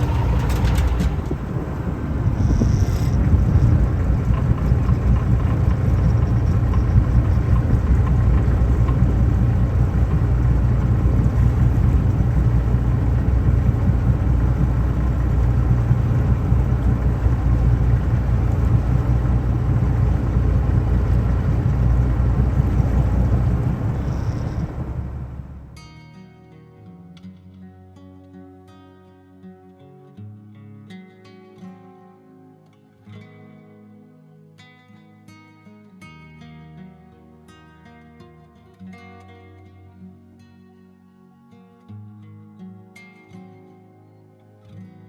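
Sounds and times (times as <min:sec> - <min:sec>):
boat engine droning: 0:00.0 - 0:25.8.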